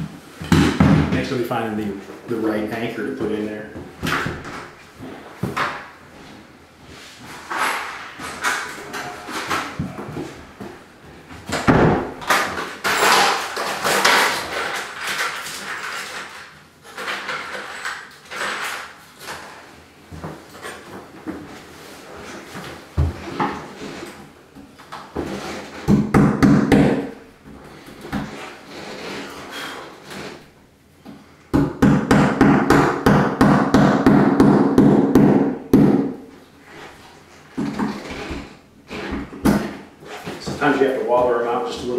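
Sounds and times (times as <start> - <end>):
hardware rustling and clattering: 0.0 - 25.9.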